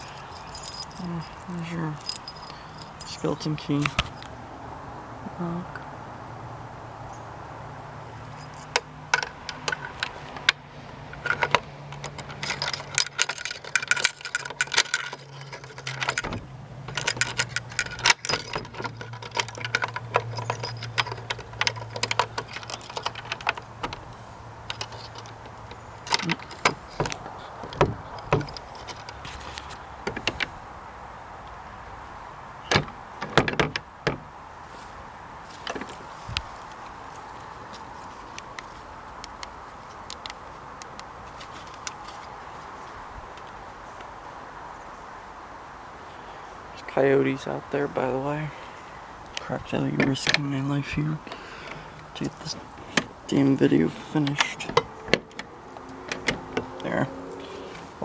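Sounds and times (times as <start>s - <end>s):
keys jangling: 0.0s - 3.2s, 11.2s - 30.4s
door lock clicking and rattling: 8.6s - 29.4s, 32.7s - 34.2s, 54.2s - 56.9s.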